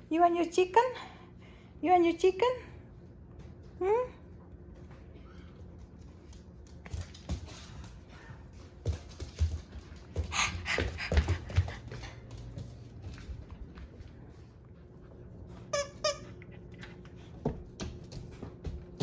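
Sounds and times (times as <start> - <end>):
dog panting: 10.0 - 13.0.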